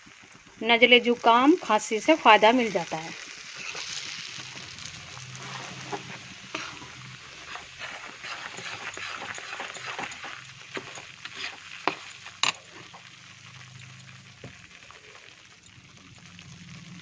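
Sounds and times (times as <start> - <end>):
light sizzle: 0.0 - 17.0
spoon scraping through flour: 3.6 - 13.1
spoon clinking against pan: 8.3 - 13.1.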